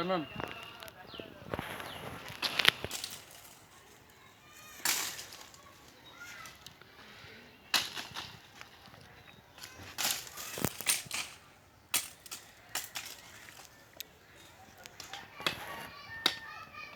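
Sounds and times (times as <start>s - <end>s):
wood being chopped: 9.6s - 16.5s.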